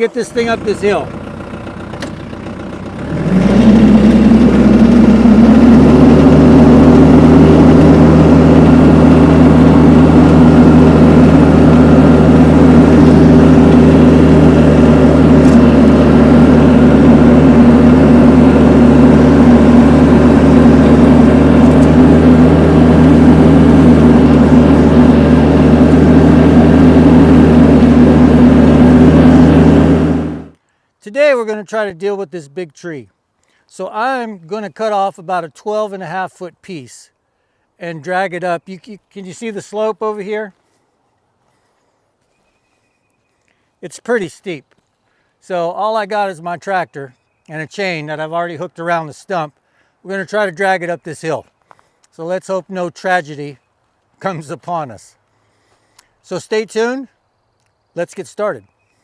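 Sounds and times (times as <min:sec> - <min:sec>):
tractor engine pulling under load: 0:00.0 - 0:30.6.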